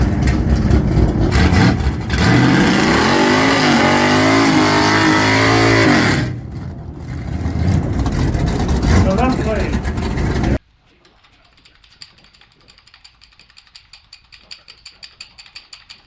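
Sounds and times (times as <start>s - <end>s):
car engine revving: 0.0s - 10.6s.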